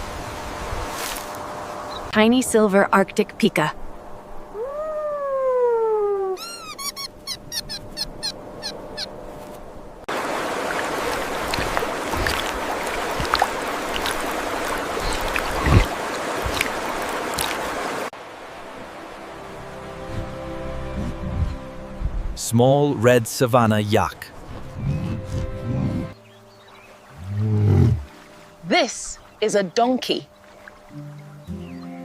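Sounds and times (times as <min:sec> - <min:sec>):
animal cry falling in pitch: 0:04.5 - 0:07.7
short animal chirps: 0:06.4 - 0:09.1.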